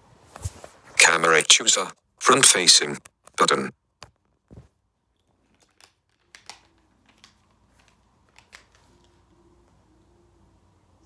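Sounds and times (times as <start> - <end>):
faint clicks handling a phone: 5.2 - 9.8.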